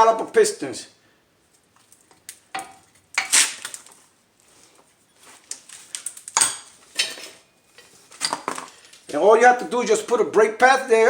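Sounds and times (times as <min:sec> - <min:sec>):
metal tools clinking and clattering: 0:06.4 - 0:08.6.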